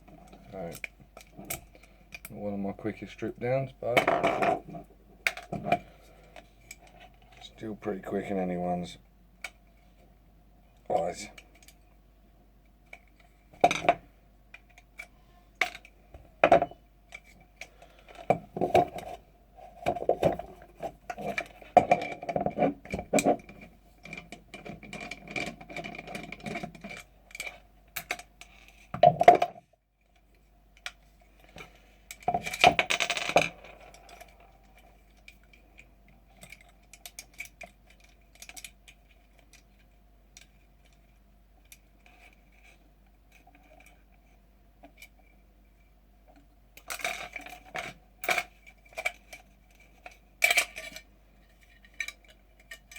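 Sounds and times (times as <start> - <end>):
rattling of parts: 3.5 - 7.6, 31.4 - 41.0
metal and plastic parts clicking: 30.8 - 41.0, 46.8 - 52.9.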